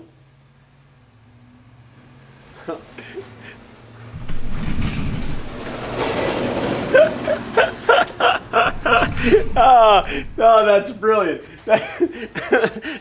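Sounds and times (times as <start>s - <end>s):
delivery truck engine: 4.2s - 7.7s, 8.5s - 10.7s
man laughing: 11.7s - 13.0s.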